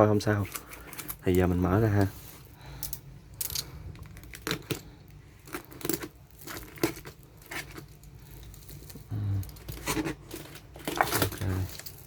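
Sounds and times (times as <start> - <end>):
cardboard packaging crinkling: 3.9 - 12.0.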